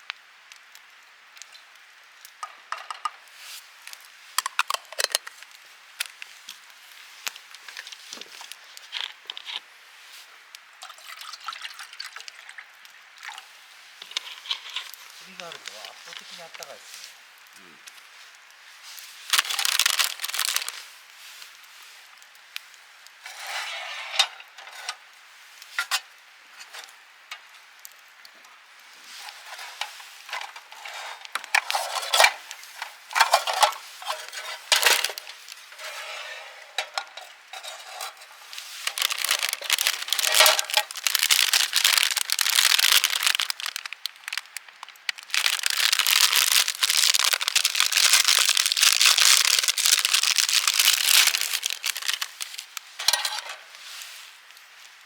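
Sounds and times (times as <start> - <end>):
rustling and crinkling: 3.0 - 11.4, 13.2 - 55.0
metal mess tin clinking: 4.4 - 5.4, 29.2 - 43.4, 45.4 - 53.8.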